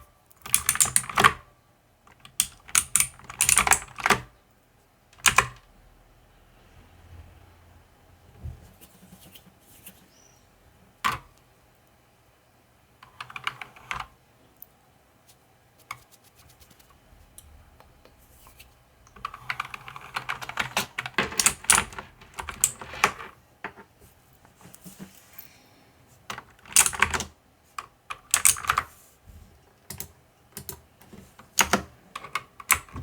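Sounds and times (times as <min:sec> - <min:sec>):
mechanical keyboard typing: 0:00.4 - 0:01.4, 0:02.1 - 0:04.3, 0:05.2 - 0:05.6, 0:13.0 - 0:14.1, 0:19.1 - 0:23.4, 0:26.5 - 0:27.4, 0:28.1 - 0:28.9, 0:29.9 - 0:30.8, 0:31.5 - 0:33.0.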